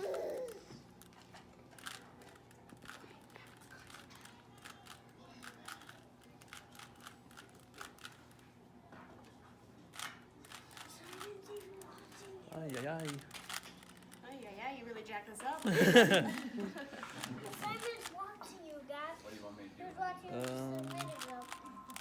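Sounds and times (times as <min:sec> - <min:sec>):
puzzle cube plastic clicks: 0:01.0 - 0:08.3, 0:10.0 - 0:14.2, 0:20.4 - 0:22.0.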